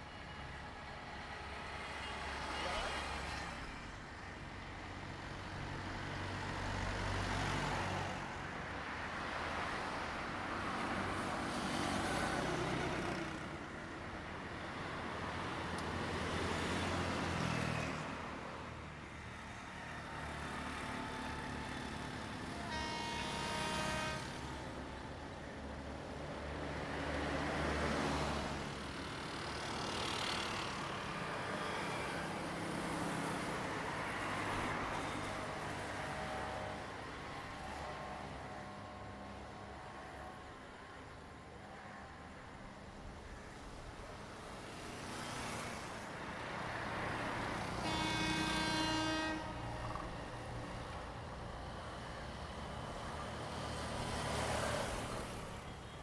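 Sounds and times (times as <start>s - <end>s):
road traffic passing: 0.0s - 56.0s
vehicle horn: 22.5s - 25.0s, 47.6s - 50.2s.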